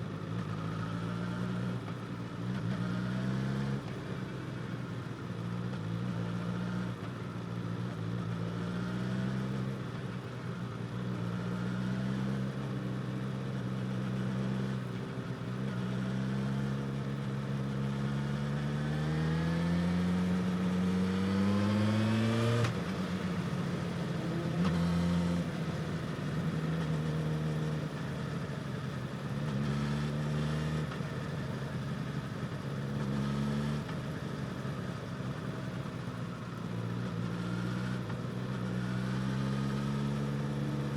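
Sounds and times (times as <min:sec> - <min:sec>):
motorcycle engine revving: 0:15.9 - 0:28.0, 0:36.8 - 0:40.9.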